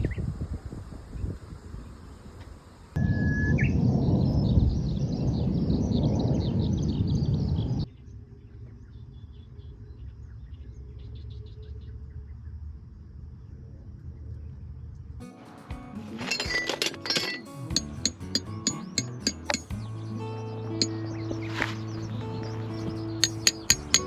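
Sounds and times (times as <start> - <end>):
birds chirping and twittering: 1.2 - 12.6, 16.3 - 24.0.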